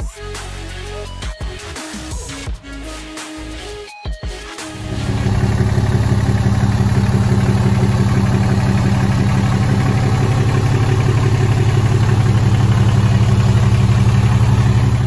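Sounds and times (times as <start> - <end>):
diesel engine idling: 4.7 - 15.0.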